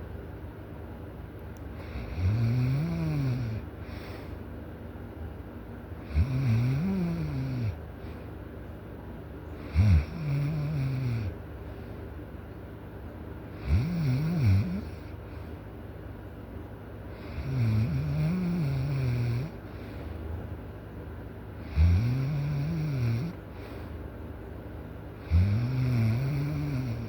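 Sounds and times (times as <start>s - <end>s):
person snoring loudly: 1.8s - 4.1s, 6.0s - 7.8s, 9.6s - 11.3s, 13.6s - 15.0s, 17.2s - 19.6s, 21.6s - 23.4s, 25.2s - 27.0s.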